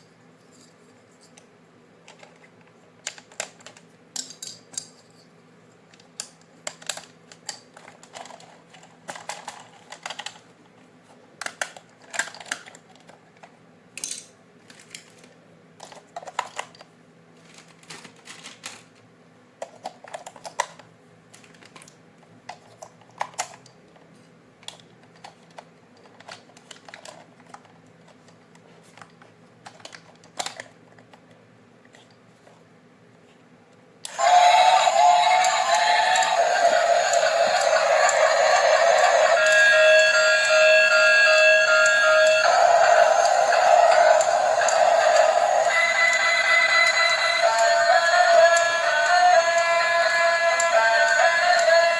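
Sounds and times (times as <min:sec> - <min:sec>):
hands handling plastic toy parts: 0:00.4 - 0:32.7.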